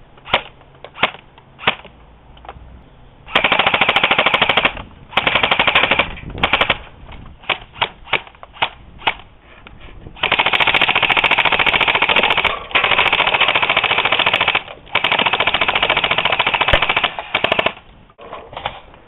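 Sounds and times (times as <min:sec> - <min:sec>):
airsoft gun automatic fire: 0:03.3 - 0:06.8, 0:10.2 - 0:17.8.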